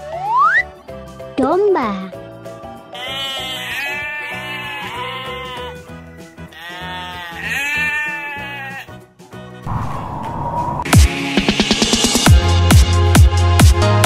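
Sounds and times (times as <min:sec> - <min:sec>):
background music: 0:00.0 - 0:14.0
sheep bleating: 0:02.9 - 0:09.0.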